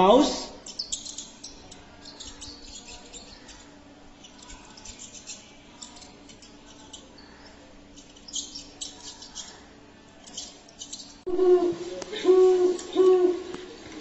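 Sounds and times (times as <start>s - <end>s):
mouse squeaking: 0.6s - 11.3s.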